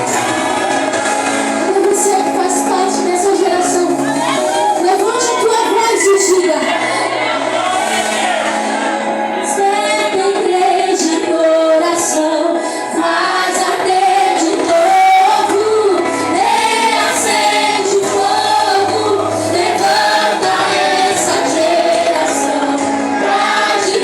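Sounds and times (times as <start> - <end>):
women singing worship song: 0.0 - 7.4, 8.2 - 24.0
choir singing: 12.9 - 24.0.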